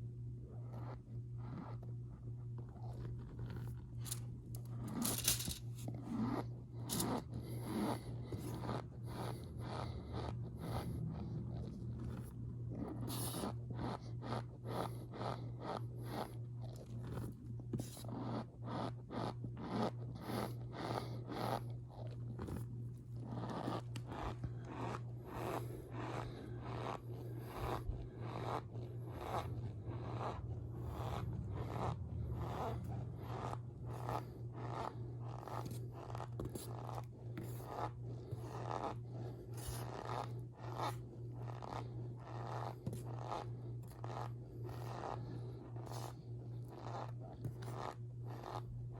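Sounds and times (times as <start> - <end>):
low hum: 23.8 - 36.4.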